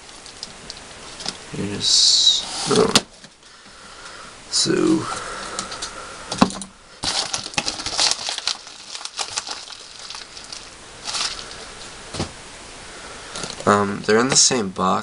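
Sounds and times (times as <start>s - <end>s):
packaging rustling: 5.1s - 12.4s
packaging clicks: 6.5s - 11.6s.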